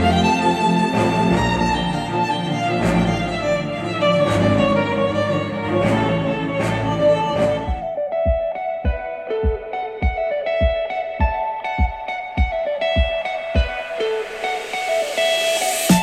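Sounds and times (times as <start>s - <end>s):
bowed strings: 0.0s - 8.8s
percussive hit: 7.7s - 14.8s.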